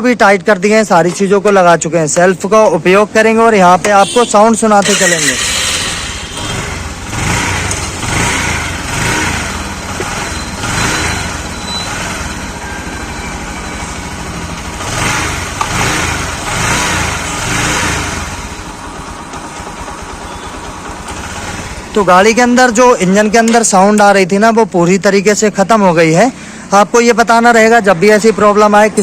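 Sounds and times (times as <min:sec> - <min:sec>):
motorcycle engine idling with revs: 0:04.8 - 0:24.3.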